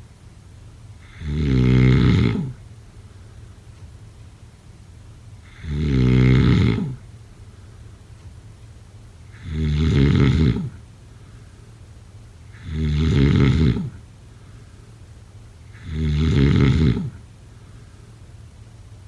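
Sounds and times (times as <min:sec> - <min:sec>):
person snoring loudly: 0:01.0 - 0:02.6, 0:05.5 - 0:07.0, 0:09.3 - 0:10.8, 0:12.5 - 0:14.0, 0:15.7 - 0:17.2.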